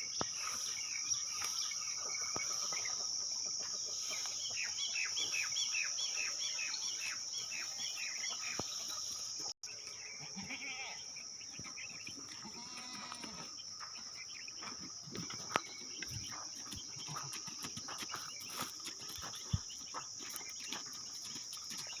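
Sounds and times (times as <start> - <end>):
birds chirping rapidly: 0.0 - 22.0
crickets droning: 0.0 - 22.0
goats bleating: 10.2 - 11.0, 12.4 - 13.5.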